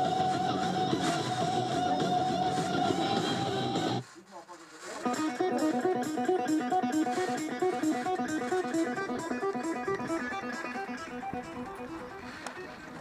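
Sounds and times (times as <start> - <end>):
fast picked guitar riff: 5.1 - 13.0.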